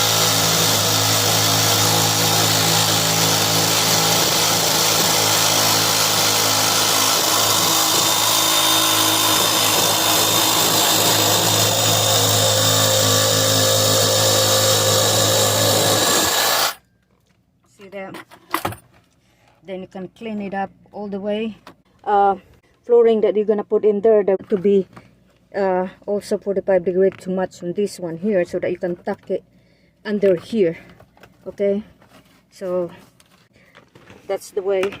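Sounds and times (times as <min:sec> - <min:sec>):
electric power saw cutting wood: 0:00.0 - 0:16.8.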